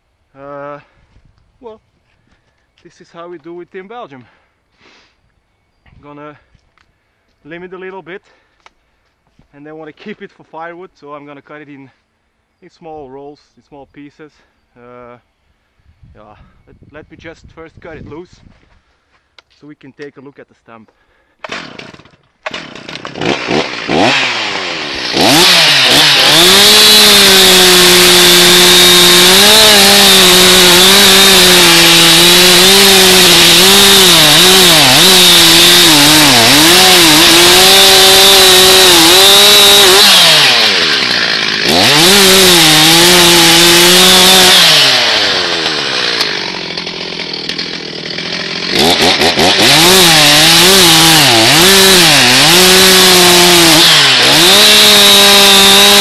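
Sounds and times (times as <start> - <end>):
chainsaw cutting wood: 21.4 - 56.0.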